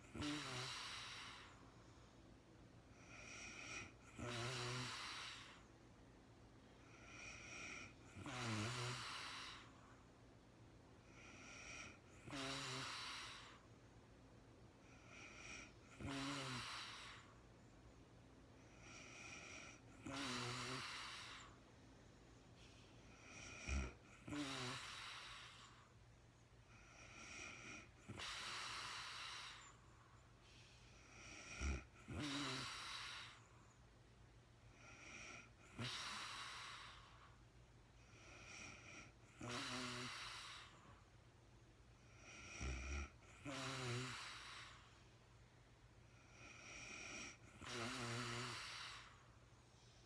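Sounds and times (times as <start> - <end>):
woman snoring and breathing: 0.0 - 1.8, 2.9 - 5.7, 6.8 - 10.0, 11.0 - 13.7, 14.8 - 17.4, 18.6 - 21.7, 22.6 - 26.0, 26.6 - 33.9, 34.7 - 41.2, 42.0 - 45.1, 46.1 - 49.5.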